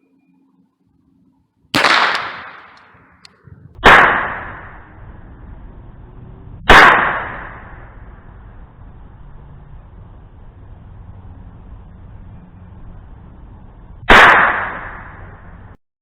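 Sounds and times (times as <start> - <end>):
gunshots with echo: 1.8 - 5.0, 6.6 - 8.0, 14.1 - 15.4.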